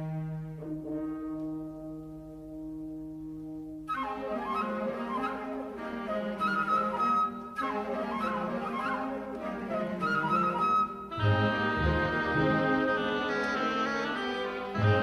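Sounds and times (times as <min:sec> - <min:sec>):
lower instruments: 0:00.0 - 0:15.0
flute playing quick melody: 0:03.9 - 0:15.0.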